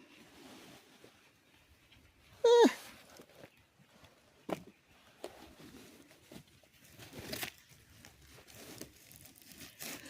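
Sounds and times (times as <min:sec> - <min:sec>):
hands digging through dry soil: 0:02.5 - 0:10.0.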